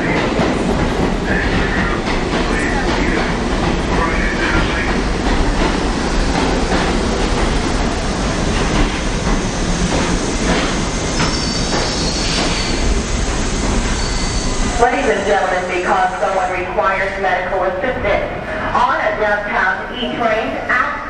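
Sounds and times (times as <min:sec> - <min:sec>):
subway train rumbling: 0:00.0 - 0:21.0
high wheel squeal: 0:11.1 - 0:13.0, 0:13.8 - 0:15.2.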